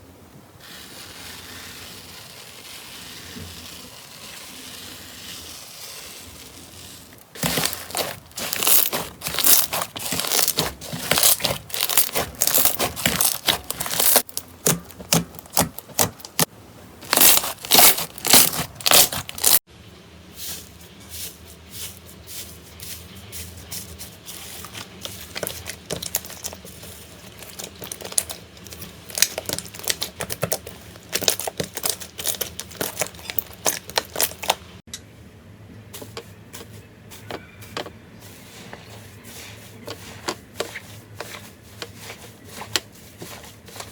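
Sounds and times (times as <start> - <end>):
slime crackling when squeezed: 6.8 - 16.5, 17.1 - 19.6, 25.4 - 34.6.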